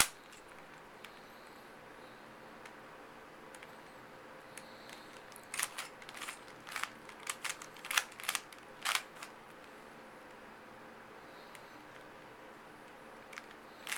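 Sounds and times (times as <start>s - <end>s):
puzzle cube clicking snaps: 0.0s - 0.4s, 4.9s - 9.4s.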